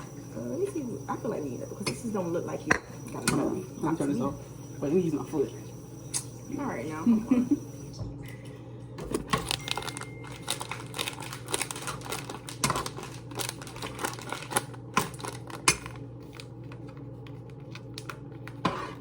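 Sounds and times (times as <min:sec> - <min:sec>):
steady low hum: 0:00.0 - 0:19.0
cooking clicks and crackles: 0:09.0 - 0:18.8.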